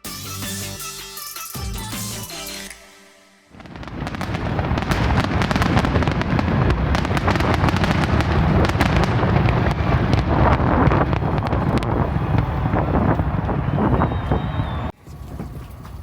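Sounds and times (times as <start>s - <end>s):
fireworks popping and banging: 3.6s - 14.7s.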